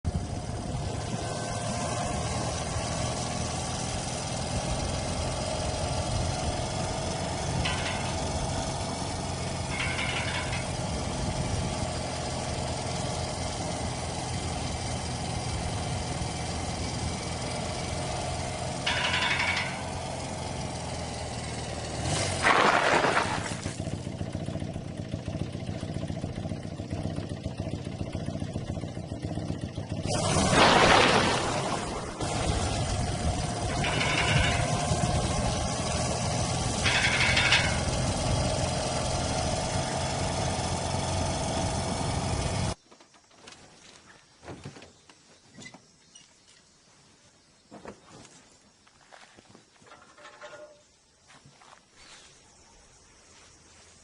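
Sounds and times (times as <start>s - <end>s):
motorcycle engine running: 0.0s - 42.8s.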